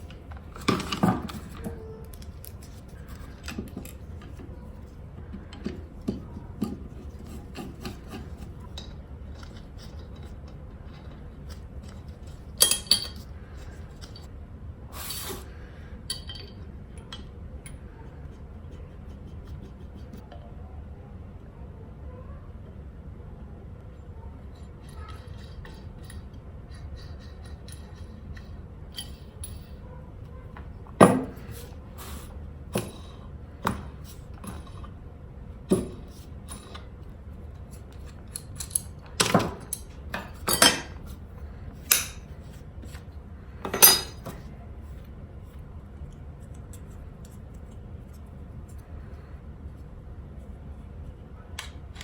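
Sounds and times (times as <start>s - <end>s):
metal parts clinking and knocking: 0.0s - 4.8s, 5.5s - 14.3s, 16.1s - 17.8s, 24.8s - 29.8s, 37.6s - 41.2s, 41.8s - 42.6s, 43.6s - 44.5s.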